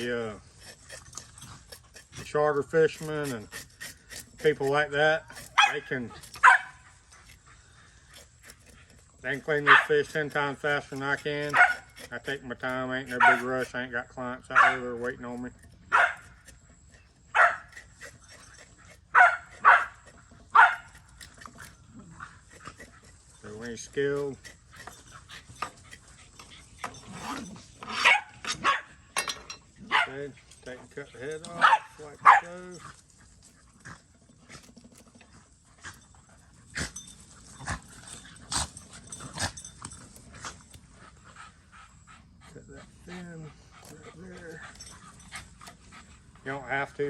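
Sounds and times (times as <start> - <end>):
dog barking: 5.3 - 7.4, 9.5 - 10.2, 11.4 - 12.1, 13.1 - 13.6, 14.5 - 15.0, 15.9 - 16.4, 17.3 - 18.1, 18.9 - 21.2, 27.2 - 29.0, 29.8 - 30.2, 31.5 - 32.6.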